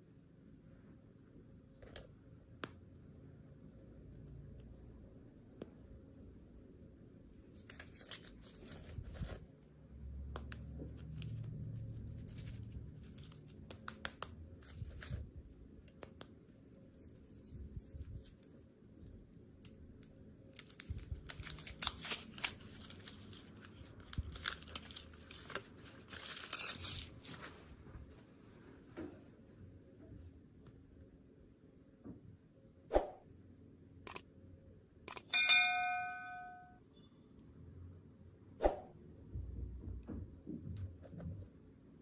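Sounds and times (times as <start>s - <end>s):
candy wrapper crinkling and tearing: 7.5s - 9.5s, 10.5s - 15.2s, 19.6s - 27.5s.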